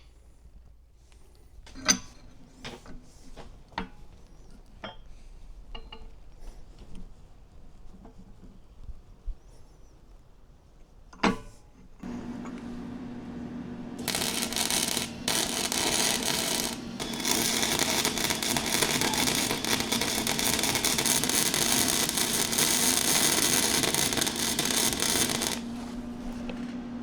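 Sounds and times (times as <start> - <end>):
welder arc crackling and sputtering: 12.0 - 26.8
steady low hum: 12.0 - 27.0.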